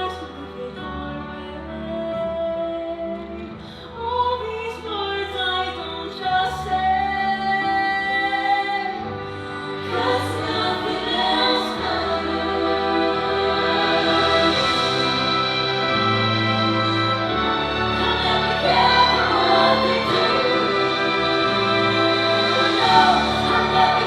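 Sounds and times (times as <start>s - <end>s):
sustained instruments: 6.9s - 24.0s.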